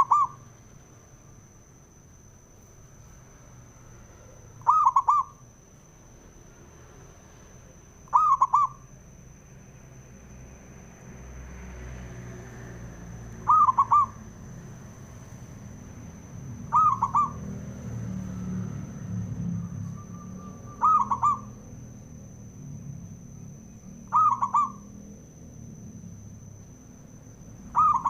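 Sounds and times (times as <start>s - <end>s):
dove cooing: 0.0s - 0.4s, 4.6s - 5.4s, 8.1s - 8.8s, 13.4s - 14.3s, 16.6s - 17.6s, 19.7s - 21.8s, 24.0s - 24.9s, 27.7s - 28.0s.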